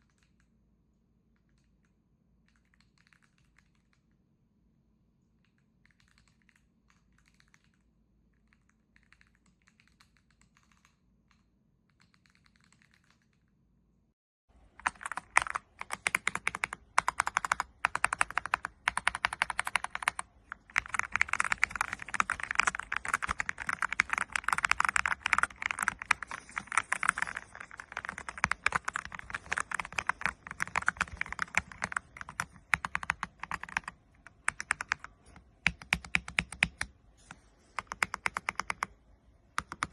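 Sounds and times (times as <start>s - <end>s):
mechanical keyboard typing: 1.4s - 4.1s, 5.4s - 13.5s, 14.8s - 39.0s, 39.6s - 39.9s.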